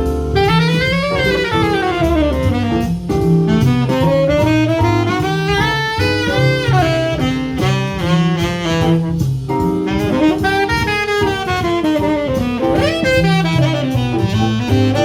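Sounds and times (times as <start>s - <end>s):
drums: 0.0s - 15.0s
saxophone solo: 0.0s - 15.0s
walking bass line: 0.0s - 15.0s.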